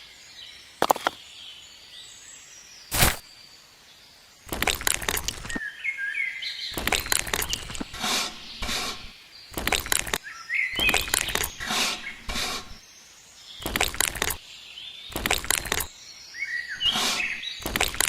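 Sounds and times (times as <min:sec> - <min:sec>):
loud scraping noises: 0:02.9 - 0:03.2, 0:04.5 - 0:05.6, 0:06.8 - 0:10.2, 0:10.8 - 0:12.8, 0:13.6 - 0:14.4, 0:15.1 - 0:15.9, 0:16.8 - 0:18.0
birds chirping: 0:04.4 - 0:18.0.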